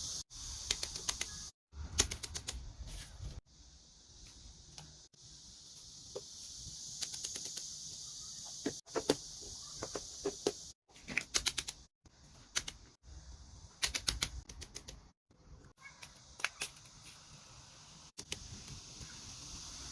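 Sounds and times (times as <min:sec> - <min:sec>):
steady high hiss: 0:02.8 - 0:10.8, 0:16.1 - 0:19.9.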